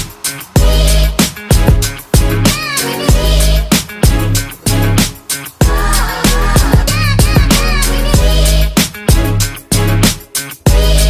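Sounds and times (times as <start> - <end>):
hip hop track with heavy bass: 0.0 - 11.0
sung vocal line: 2.4 - 3.8, 5.6 - 8.8.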